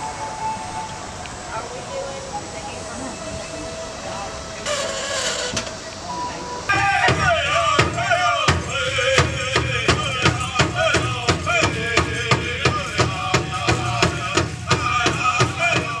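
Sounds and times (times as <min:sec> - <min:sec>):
singers' wavering voices: 0:00.0 - 0:16.0
drum beating steadily: 0:05.8 - 0:16.0.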